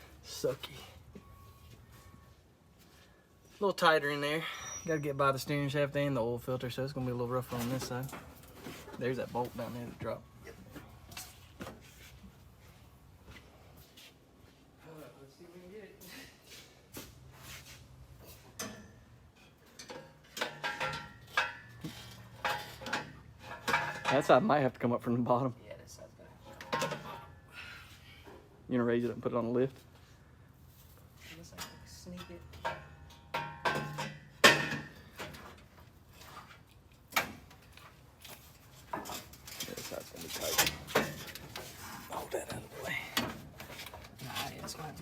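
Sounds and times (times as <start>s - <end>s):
metal clinks and knocks: 18.6s - 24.3s, 31.5s - 35.7s, 37.4s - 42.0s
metal clanking: 19.7s - 24.3s.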